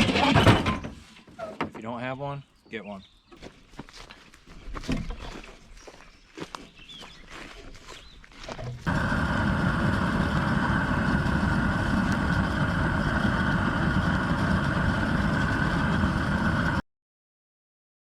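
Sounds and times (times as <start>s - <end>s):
machine noise with high tone: 8.9s - 16.8s.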